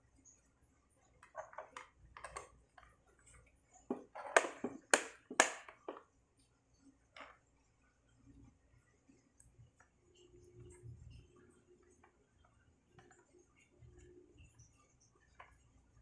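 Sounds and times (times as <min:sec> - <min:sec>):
hands clicking and tapping laptop: 0:03.9 - 0:06.0.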